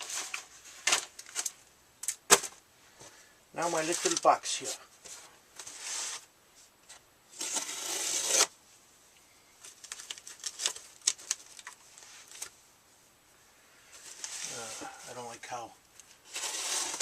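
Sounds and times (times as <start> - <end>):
packaging tearing and rustling: 3.6 - 4.4, 7.3 - 8.5, 9.6 - 12.5, 16.0 - 17.0.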